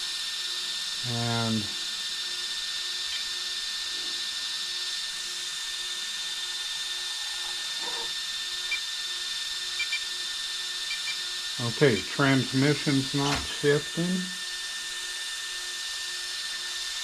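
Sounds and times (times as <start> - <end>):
electric motors whining: 0.0 - 17.0.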